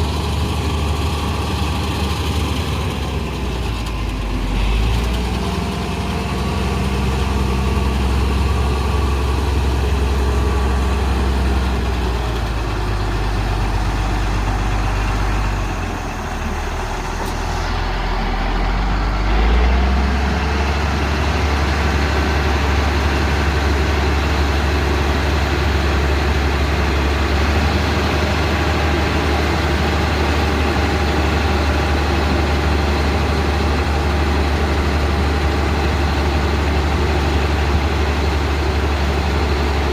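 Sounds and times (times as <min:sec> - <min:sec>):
heavy diesel engine running: 0:00.0 - 0:39.9.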